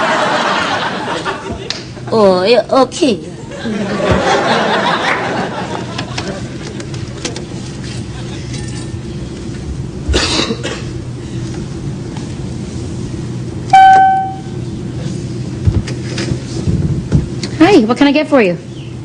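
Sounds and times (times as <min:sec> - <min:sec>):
low cabin hum: 0:00.0 - 0:18.3
call-button chime ding: 0:13.8 - 0:14.5.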